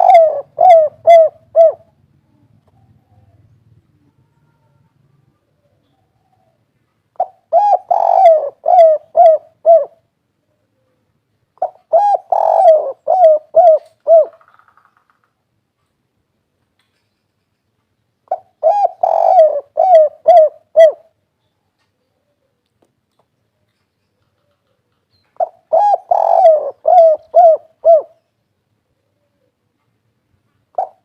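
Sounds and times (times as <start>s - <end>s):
dove cooing: 0.0s - 2.0s, 7.2s - 10.1s, 11.6s - 14.5s, 18.3s - 21.2s, 24.3s - 28.2s, 30.7s - 31.0s.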